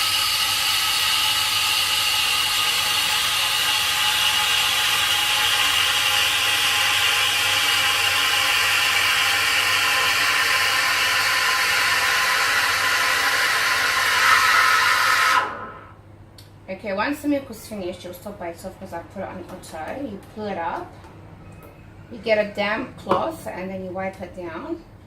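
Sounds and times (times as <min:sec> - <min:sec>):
steam wand frothing milk: 0:00.0 - 0:16.0.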